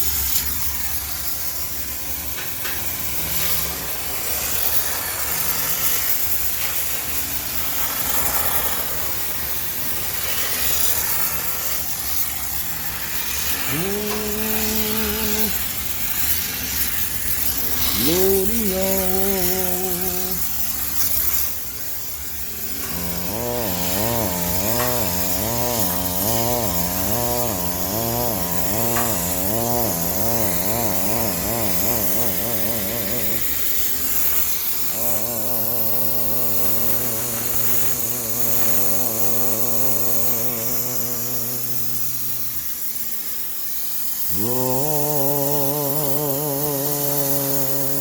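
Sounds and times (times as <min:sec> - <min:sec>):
steam cleaner motor humming: 0:00.0 - 0:48.0
steam hissing: 0:00.0 - 0:48.0.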